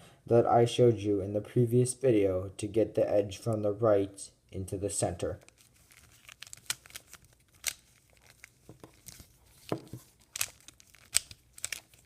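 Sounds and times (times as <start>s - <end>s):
puzzle cube twisting clicks: 5.4s - 12.0s.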